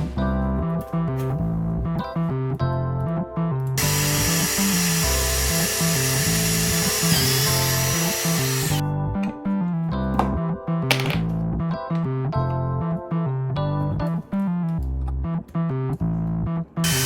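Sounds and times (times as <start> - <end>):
electric piano music: 0.0 - 17.0
power tool running: 3.8 - 8.8.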